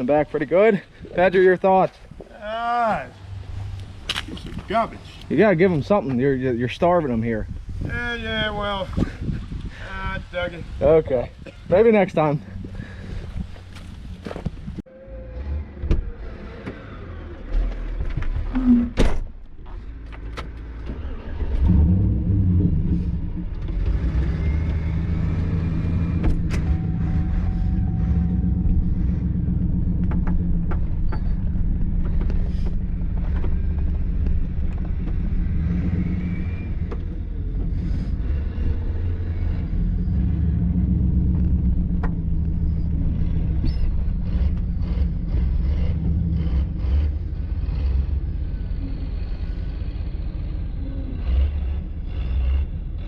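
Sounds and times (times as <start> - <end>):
knocks and clunks: 17.5 - 21.7, 22.6 - 39.1, 41.3 - 46.3
vehicle engine running: 19.7 - 53.0.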